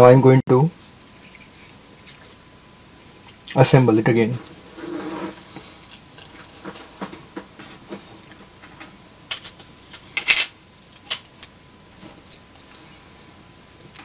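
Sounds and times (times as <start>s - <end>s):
plastic parts clicking: 9.3s - 11.5s.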